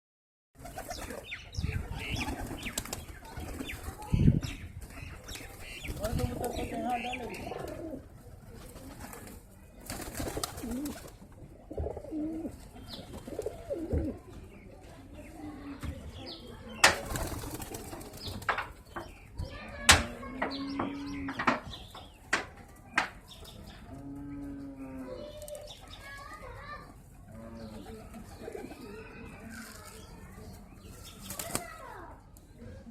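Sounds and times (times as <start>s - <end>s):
pigeons cooing: 5.6s - 8.1s, 10.2s - 14.3s, 27.3s - 29.8s.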